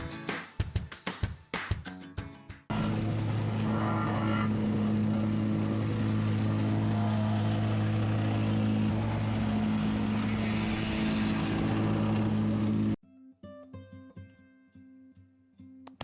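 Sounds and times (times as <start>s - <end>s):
engine humming steadily: 2.7s - 13.0s.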